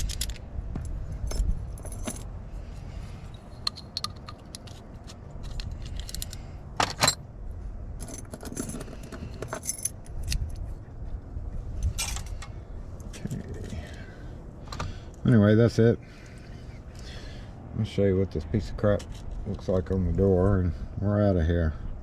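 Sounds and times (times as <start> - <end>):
lock parts clicking and jingling: 0.0 - 2.4, 3.2 - 7.2, 8.0 - 10.6, 11.8 - 13.7.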